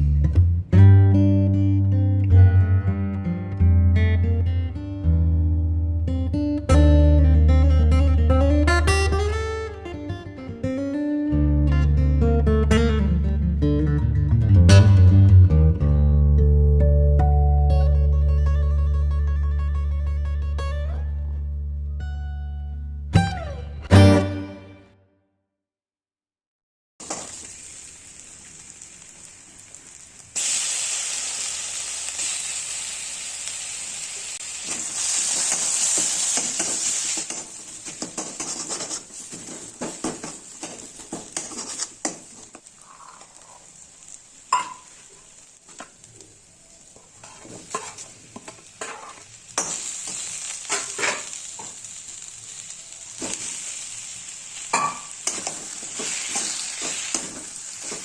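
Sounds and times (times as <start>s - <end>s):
food sizzling in hot oil: 27.0s - 58.0s
spatula scraping and tapping pan: 34.7s - 43.5s, 44.5s - 45.0s, 47.0s - 51.8s, 54.7s - 58.0s.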